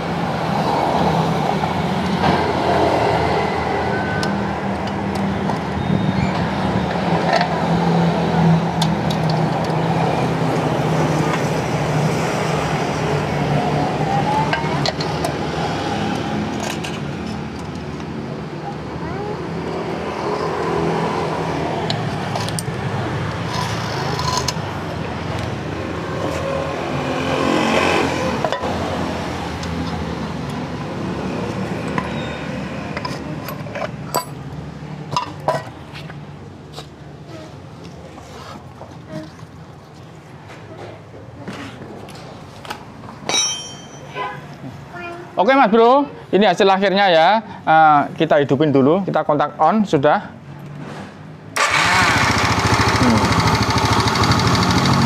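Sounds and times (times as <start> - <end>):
engine running: 51.6 - 55.0.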